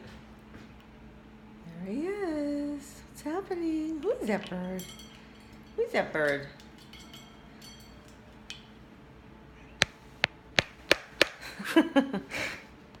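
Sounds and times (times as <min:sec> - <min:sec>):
sharp taps: 0:09.8 - 0:11.5.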